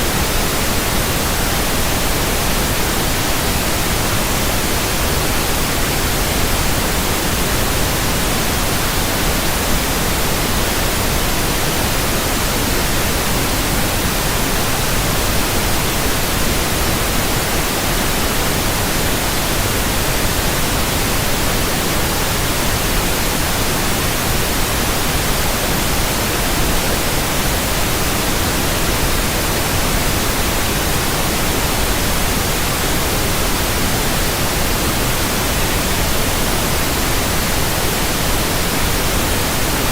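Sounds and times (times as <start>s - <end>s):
white noise static hiss: 0.0s - 39.9s.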